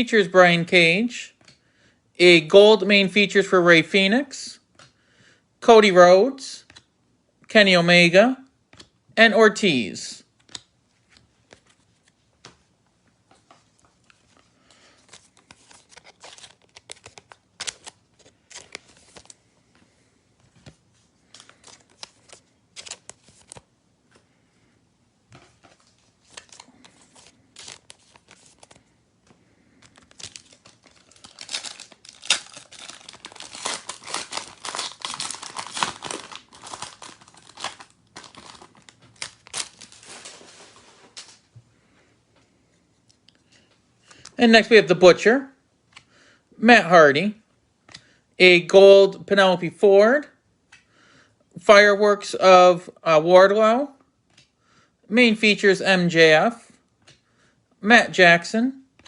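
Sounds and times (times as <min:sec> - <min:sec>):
cards being handled: 0:10.4 - 0:24.3, 0:25.3 - 0:41.4
plastic wrapper crinkling and tearing: 0:15.0 - 0:19.4, 0:21.2 - 0:23.7, 0:25.8 - 0:28.9, 0:29.7 - 0:41.4.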